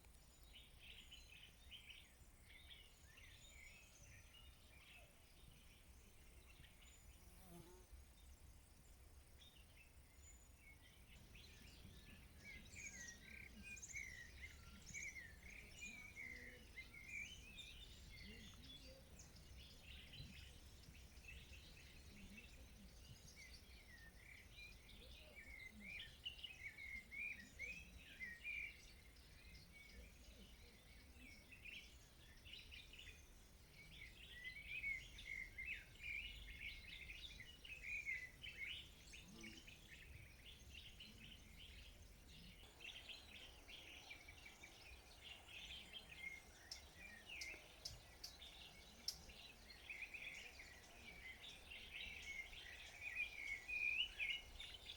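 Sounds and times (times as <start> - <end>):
songbirds twittering: 0.0 - 54.9.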